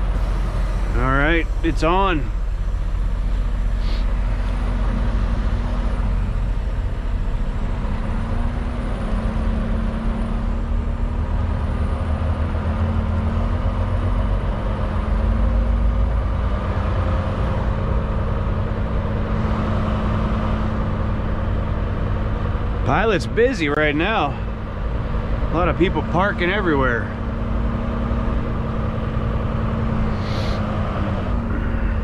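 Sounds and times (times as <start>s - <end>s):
truck diesel engine drone: 0.0s - 32.0s.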